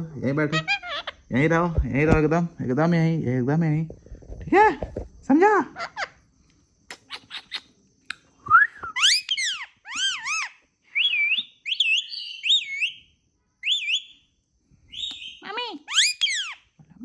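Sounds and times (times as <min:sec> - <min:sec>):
parrot whistling calls: 0:00.5 - 0:01.2, 0:06.9 - 0:07.7, 0:08.6 - 0:13.0, 0:13.6 - 0:14.2, 0:14.9 - 0:16.6
parrot clicking: 0:06.9 - 0:07.7.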